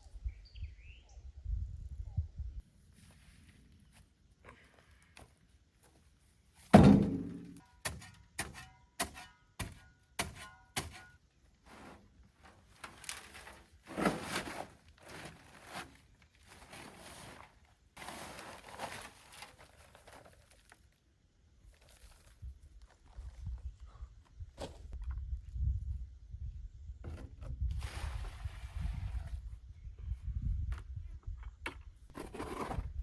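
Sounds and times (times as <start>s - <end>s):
heavy thunk: 6.7s - 7.6s.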